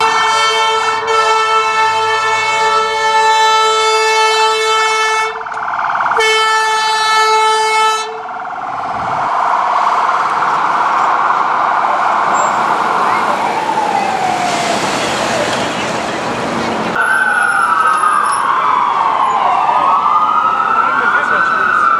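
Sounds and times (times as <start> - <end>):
ambulance air horn blasts: 0.0 - 5.5, 6.2 - 8.3
siren wailing: 0.0 - 15.7, 16.9 - 21.9
traffic noise: 0.0 - 21.9.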